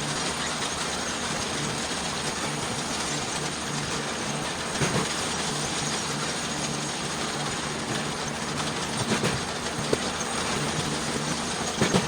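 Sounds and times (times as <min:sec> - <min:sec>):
engine humming: 0:00.0 - 0:12.0
conveyor chain rattling: 0:00.1 - 0:12.0
short clunks: 0:08.6 - 0:10.2.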